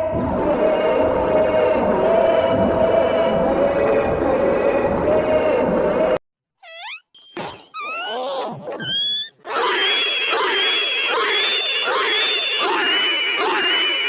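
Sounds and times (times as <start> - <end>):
downward sliding cartoon cries: 6.6 - 7.0, 7.8 - 14.0
looped stuttering creature cry: 7.8 - 14.0.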